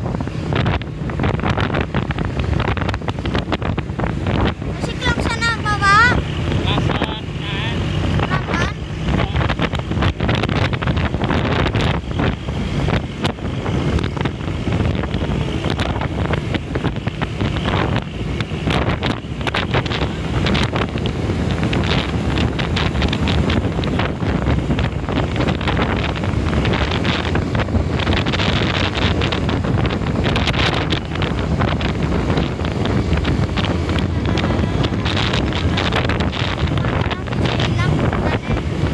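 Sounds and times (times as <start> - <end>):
bus engine and road noise: 0.0 - 38.9
wind buffeting microphone: 0.0 - 38.9.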